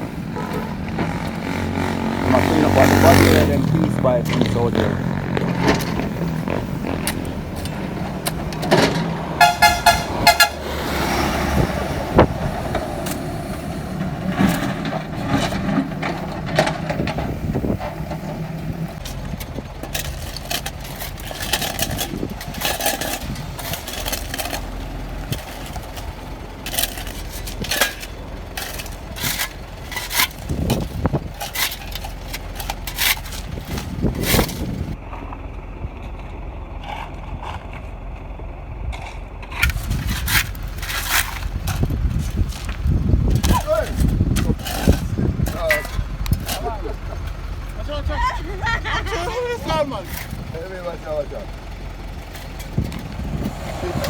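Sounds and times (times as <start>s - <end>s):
vehicle engine and traffic: 0.0s - 54.0s
vehicle horn honks: 9.4s - 10.6s.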